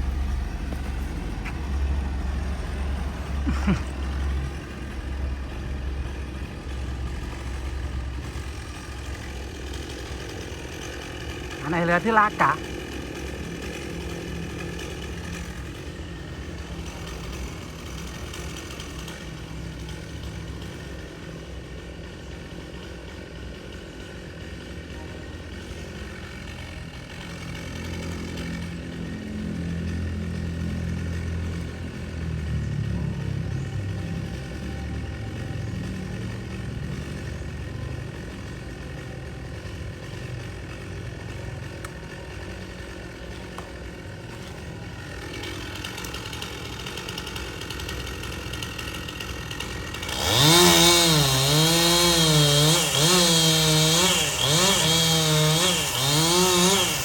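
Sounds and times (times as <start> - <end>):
small engine running: 0.0 - 57.0.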